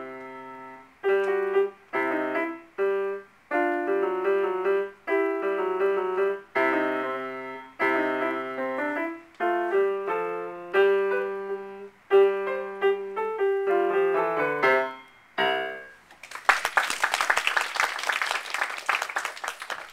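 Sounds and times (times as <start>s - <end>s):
piano music: 0.0s - 16.0s
applause: 16.1s - 19.9s.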